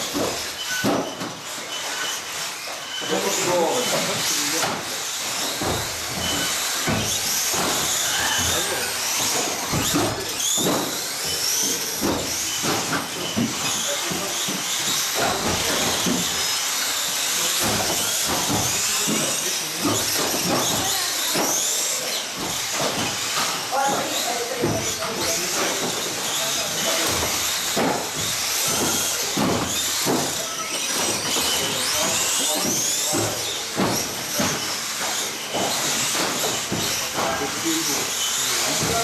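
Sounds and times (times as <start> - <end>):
rc car motors whining: 0.0 - 39.0
voices in a hall: 13.2 - 29.4.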